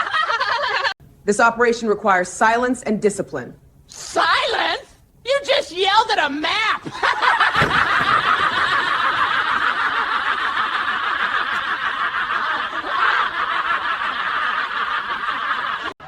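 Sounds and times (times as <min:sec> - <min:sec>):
laughter: 0:00.0 - 0:01.0, 0:06.8 - 0:16.0.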